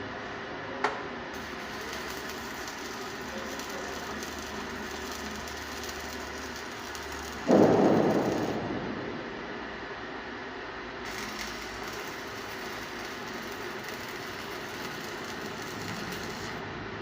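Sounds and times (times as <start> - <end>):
welding arc crackling hiss: 1.4 - 9.2, 11.0 - 16.7
rough burst of noise: 1.4 - 9.9, 11.0 - 16.7.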